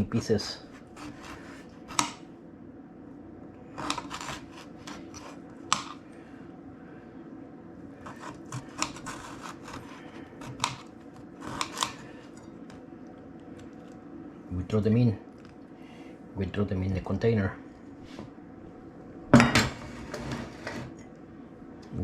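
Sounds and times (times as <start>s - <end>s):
knife chopping on board: 11.4s - 12.0s.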